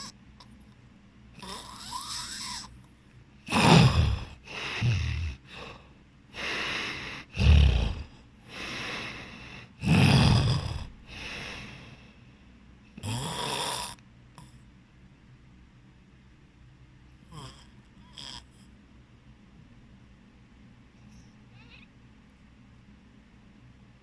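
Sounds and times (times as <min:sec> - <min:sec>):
quiet breaths: 0:00.0 - 0:14.8, 0:20.7 - 0:23.0
person snoring heavily: 0:01.4 - 0:02.7, 0:03.5 - 0:05.8, 0:06.4 - 0:11.9, 0:13.0 - 0:14.5, 0:17.3 - 0:18.5.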